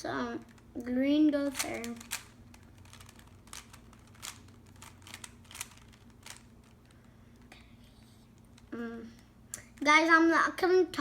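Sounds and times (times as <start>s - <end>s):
puzzle cube clicking: 1.5s - 6.9s.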